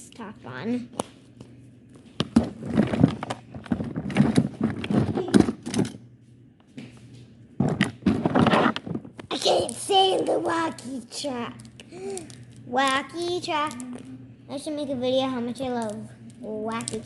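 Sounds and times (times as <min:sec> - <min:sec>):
plastic container scraping and clicking: 0:07.6 - 0:09.2.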